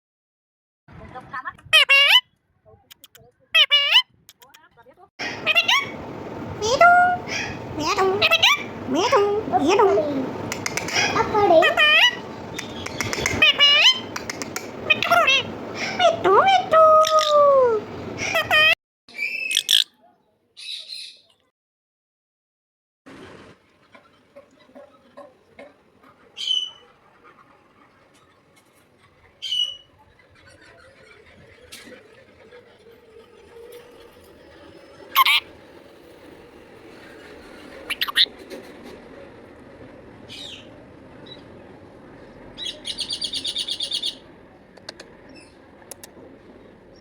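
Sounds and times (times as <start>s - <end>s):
parrot shrill calls: 1.8s - 2.2s, 3.6s - 4.1s, 5.2s - 6.0s, 6.6s - 8.7s, 10.8s - 14.2s, 18.2s - 19.9s, 26.4s - 26.8s, 29.4s - 30.0s, 35.1s - 35.5s, 37.9s - 38.3s, 42.6s - 44.2s
faint clicks: 10.5s - 11.2s, 12.6s - 13.4s, 14.1s - 15.1s.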